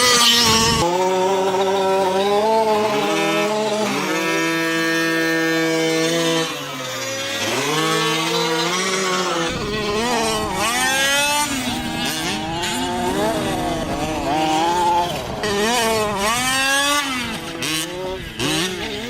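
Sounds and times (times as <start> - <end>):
toy car motors revving: 0.0 - 19.0.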